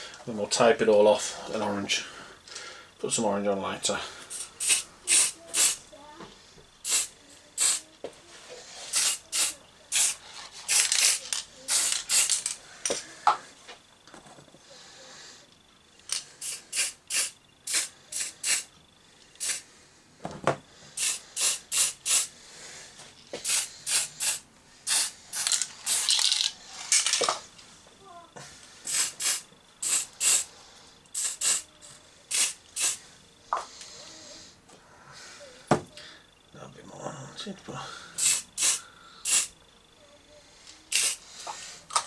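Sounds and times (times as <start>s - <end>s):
spray paint can hissing: 4.3s - 5.8s, 6.8s - 7.9s, 8.9s - 12.5s, 16.4s - 18.7s, 19.4s - 19.7s, 21.0s - 22.3s, 23.4s - 26.4s, 28.8s - 30.5s, 31.1s - 33.0s, 38.2s - 39.6s, 40.9s - 41.2s.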